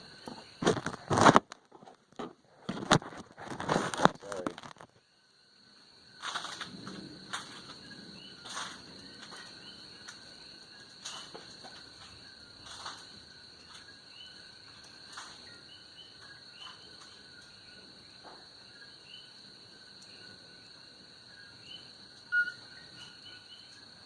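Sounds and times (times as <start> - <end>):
insect whine: 0.0 - 24.0
small chirping calls: 21.4 - 24.0.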